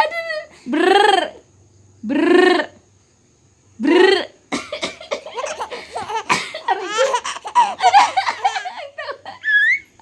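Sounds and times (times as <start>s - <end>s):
baby laughing: 4.8s - 9.8s.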